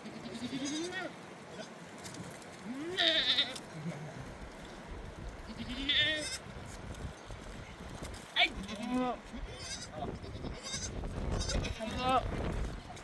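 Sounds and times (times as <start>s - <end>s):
sheep bleating: 0.0s - 1.7s, 2.7s - 4.2s, 5.5s - 6.4s, 8.4s - 12.2s.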